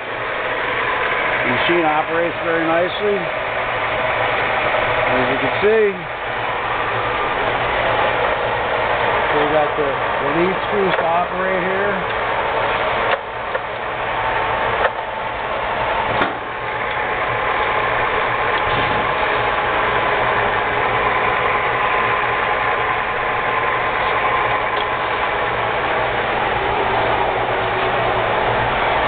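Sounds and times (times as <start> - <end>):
lathe whirring with gear chatter: 0.0 - 29.0
sharp clunks: 16.1 - 16.5.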